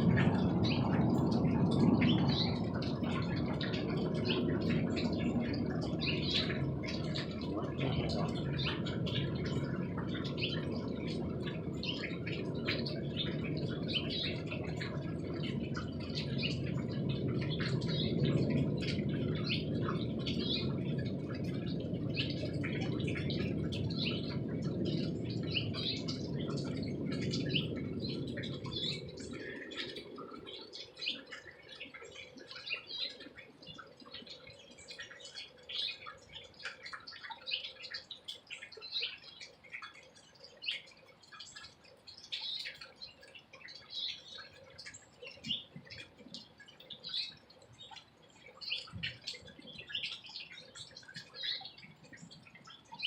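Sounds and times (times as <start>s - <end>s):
loud low steady noise: 0.0s - 30.6s.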